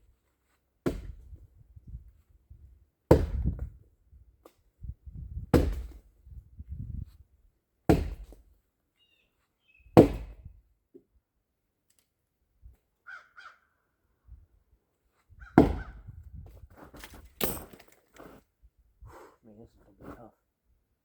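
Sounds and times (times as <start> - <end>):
axe chopping into tree trunk: 0.8 - 1.3, 3.1 - 3.7, 5.5 - 6.1, 7.9 - 8.4, 10.0 - 10.4, 15.6 - 16.0.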